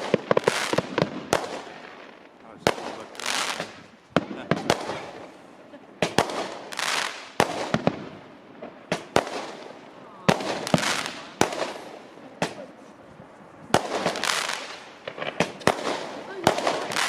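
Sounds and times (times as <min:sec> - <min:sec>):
fireworks bangs: 0:00.0 - 0:17.0
hissing crackling firework tails: 0:00.0 - 0:17.0.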